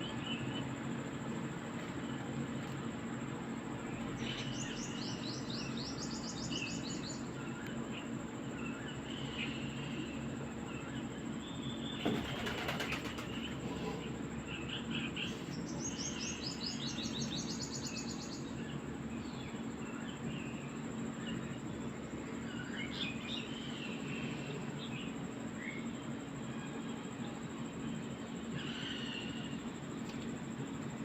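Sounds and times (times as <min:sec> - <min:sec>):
small birds chirping: 0:00.0 - 0:31.0
wing flaps: 0:12.0 - 0:13.5.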